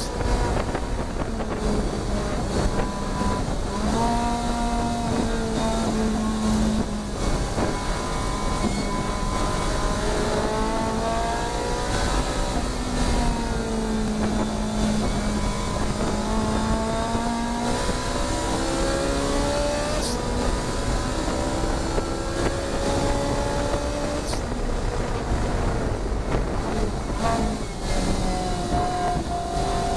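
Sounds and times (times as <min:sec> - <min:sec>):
race car engine shifting gears: 0:00.0 - 0:29.9.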